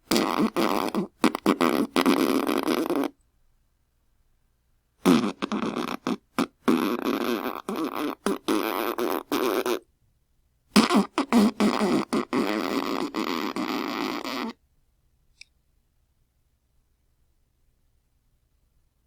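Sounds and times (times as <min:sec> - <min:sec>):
sputtering fart sounds: 0:00.0 - 0:03.2, 0:05.0 - 0:09.8, 0:10.7 - 0:14.6.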